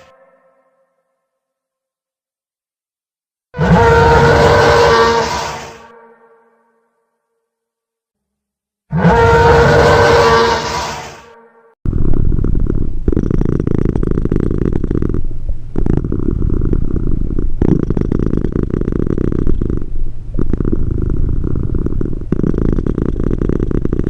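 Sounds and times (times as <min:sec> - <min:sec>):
cat purring: 0:11.9 - 0:24.0.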